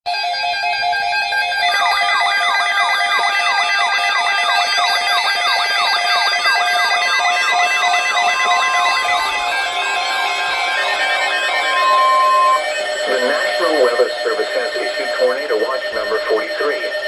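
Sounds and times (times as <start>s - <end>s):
high wavering siren wail: 0.1s - 17.0s
fast falling siren whoop: 0.6s - 13.6s
held synthesizer tones: 0.8s - 17.0s.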